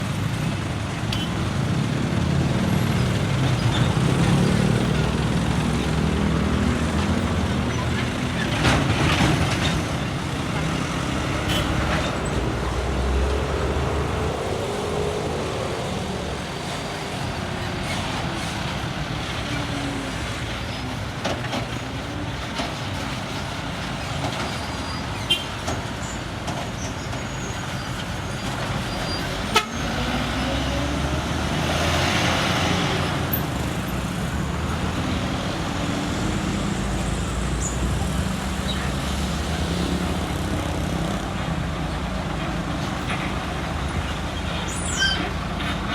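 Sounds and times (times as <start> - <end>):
vehicle engines passing: 0.0 - 45.9
car horn toot: 29.5 - 29.8.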